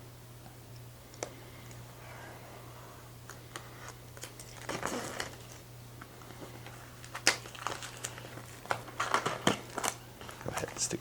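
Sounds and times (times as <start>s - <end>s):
packaging rustling: 3.3s - 5.6s, 6.2s - 11.0s
packaging clicks and crinkling: 3.3s - 11.0s.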